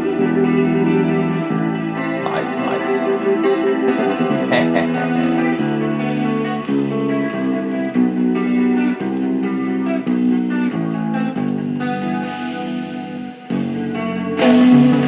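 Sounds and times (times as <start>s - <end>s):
guitar-led music: 0.0s - 15.0s.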